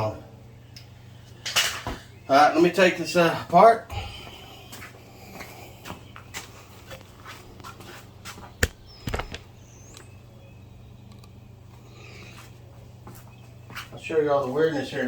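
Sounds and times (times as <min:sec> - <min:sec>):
steady low hum: 0:00.0 - 0:15.0
parts clattering: 0:08.4 - 0:09.5.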